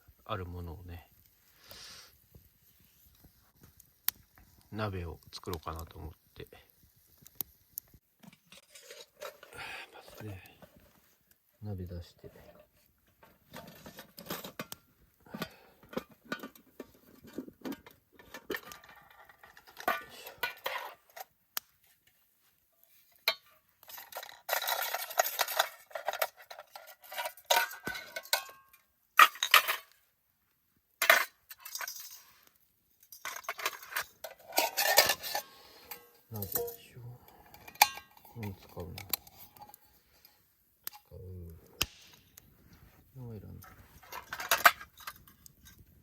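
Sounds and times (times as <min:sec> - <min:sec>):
metal pots clinking and clattering: 0:08.2 - 0:09.6, 0:12.3 - 0:21.3, 0:23.0 - 0:30.0, 0:31.0 - 0:41.2, 0:43.6 - 0:45.9.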